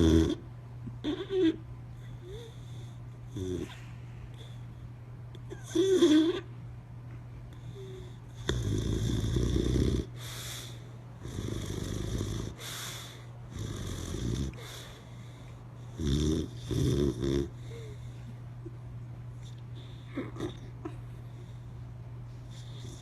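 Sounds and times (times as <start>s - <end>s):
dog snoring: 0.0s - 3.8s, 5.5s - 6.5s, 7.6s - 18.0s, 19.8s - 20.7s, 22.5s - 23.0s
soft airy breaths: 10.0s - 16.7s, 17.5s - 18.6s, 19.4s - 23.0s.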